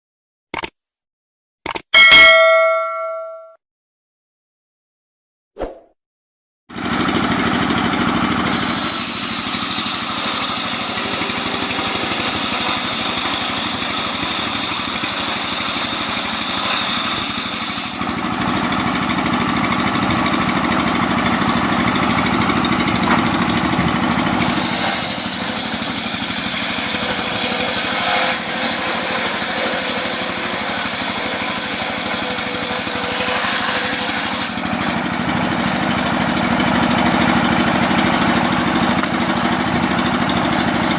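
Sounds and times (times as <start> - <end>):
sawmill engine running: 6.7 - 40.9
saw blade cutting wood hiss: 8.5 - 18.0, 24.4 - 34.5.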